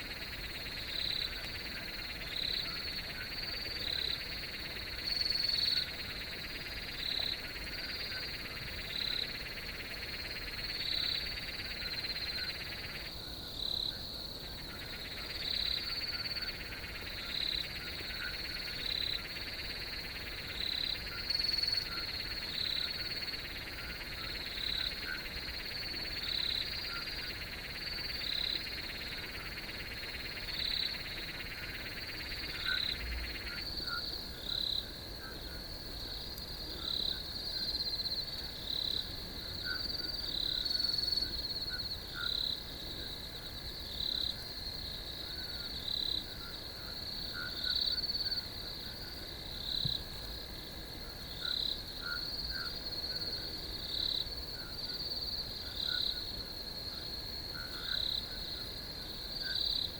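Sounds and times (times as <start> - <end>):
crickets chirping: 0.0 - 59.9.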